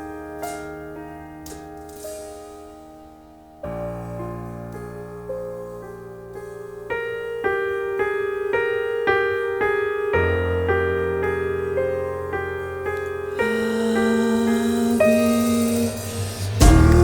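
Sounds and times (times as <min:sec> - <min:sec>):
low bass note: 0:16.3 - 0:17.0.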